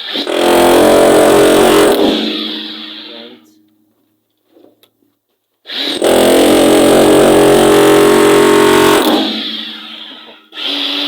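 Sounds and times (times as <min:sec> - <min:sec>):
jackhammer running: 0:00.0 - 0:03.4, 0:05.7 - 0:11.0.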